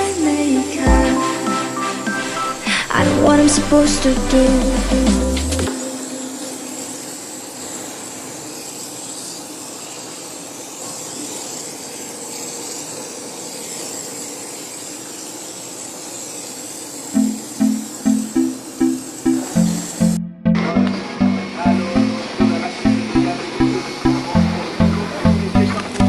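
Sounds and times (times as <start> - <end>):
car-cleaning machine hissing: 0.0 - 20.2.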